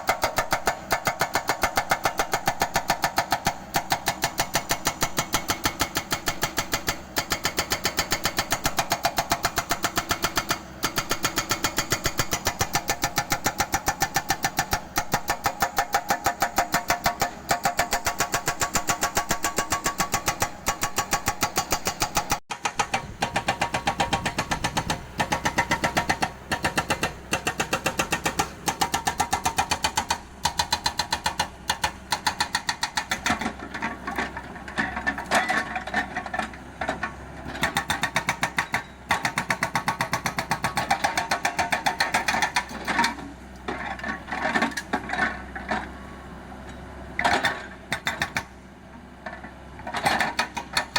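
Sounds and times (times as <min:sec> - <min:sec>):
hydraulic breaker hammering concrete: 0:00.0 - 0:33.6, 0:37.5 - 0:43.2
excavator engine running: 0:00.0 - 0:50.9.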